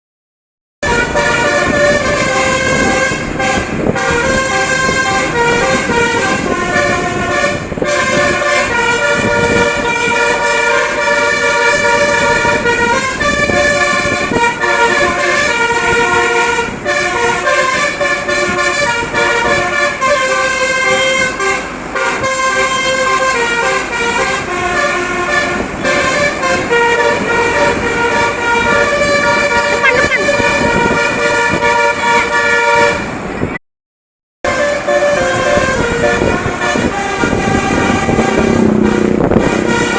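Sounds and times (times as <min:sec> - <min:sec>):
multi-tone air horn melody: 0:00.8 - 0:33.2, 0:34.4 - 0:39.9.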